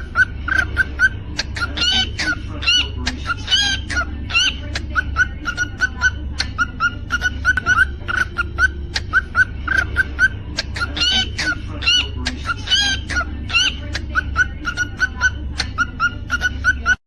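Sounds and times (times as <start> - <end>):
cockatiel chirping: 0.0 - 17.0
steady low hum: 0.0 - 17.0.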